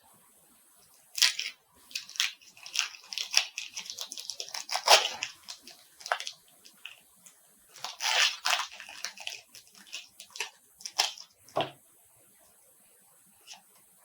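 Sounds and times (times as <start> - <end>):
foil wrapper tearing and crinkling: 1.1 - 7.0, 7.7 - 11.7.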